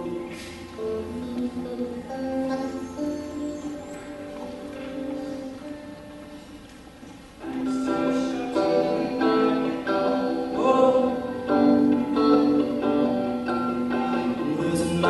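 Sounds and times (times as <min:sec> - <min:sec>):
acoustic guitar chords: 0:00.0 - 0:15.0
people singing: 0:07.5 - 0:12.7.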